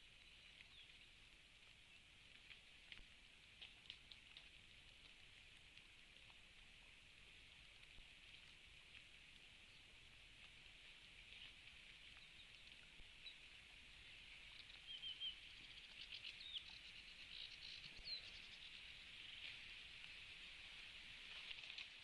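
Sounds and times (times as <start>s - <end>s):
bird chirps: 14.4s - 18.8s
rustling: 19.3s - 22.0s.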